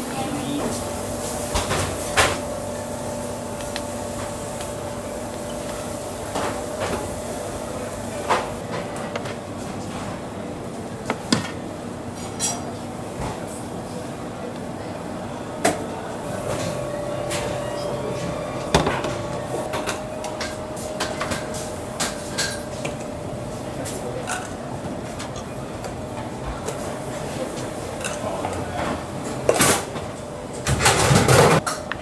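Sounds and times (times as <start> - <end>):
steady background noise: 0.0 - 32.0
dishes and utensils clinking: 16.4 - 23.1.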